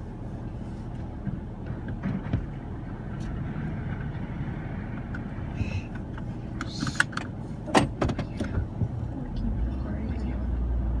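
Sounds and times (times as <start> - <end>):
truck engine low rumble: 0.0 - 11.0.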